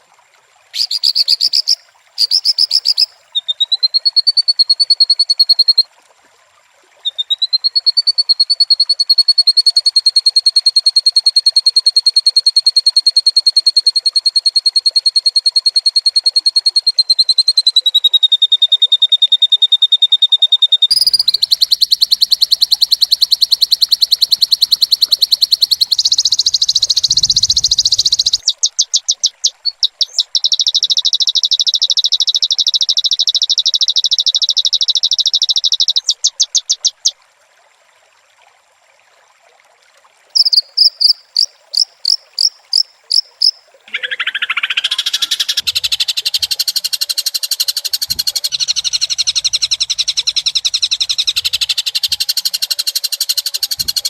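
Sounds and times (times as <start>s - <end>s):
high-pitched bird trills: 0.8s - 5.8s, 20.2s - 37.1s, 40.4s - 54.0s.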